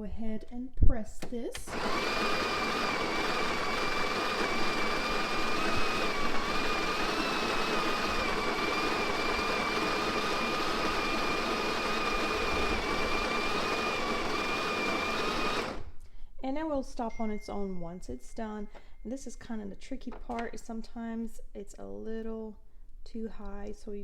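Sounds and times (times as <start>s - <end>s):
coffee grinder motor whine: 1.6s - 16.0s.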